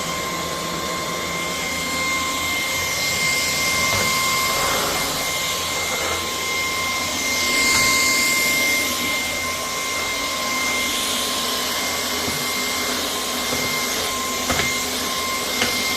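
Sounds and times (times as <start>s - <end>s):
stick vacuum cleaner running: 0.0s - 15.9s.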